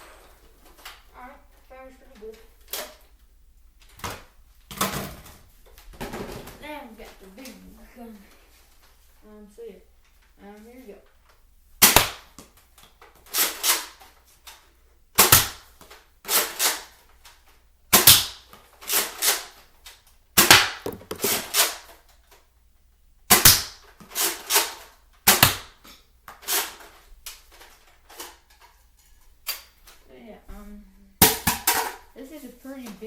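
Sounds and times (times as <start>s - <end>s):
toy dart blaster plastic clacks: 20.8s - 21.5s.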